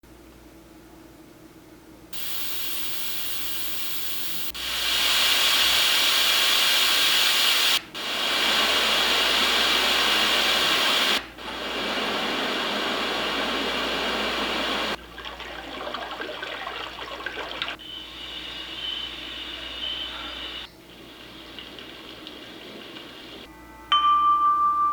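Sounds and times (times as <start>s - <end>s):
white noise hiss: 2.0s - 15.2s, 17.7s - 23.5s.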